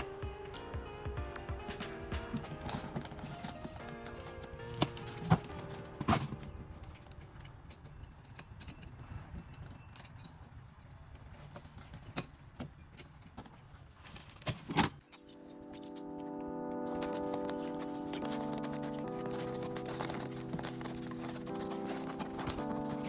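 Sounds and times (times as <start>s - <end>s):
tools and hardware clicking: 2.4s - 16.0s, 17.0s - 23.0s.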